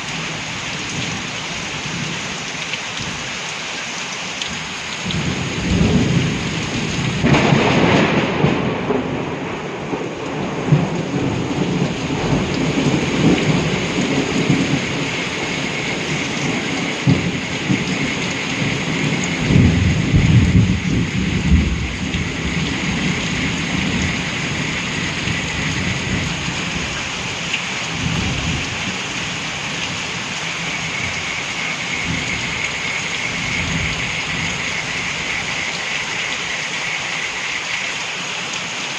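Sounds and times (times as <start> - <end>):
steady rain falling: 0.0 - 38.9
thunder rolling: 5.1 - 26.9.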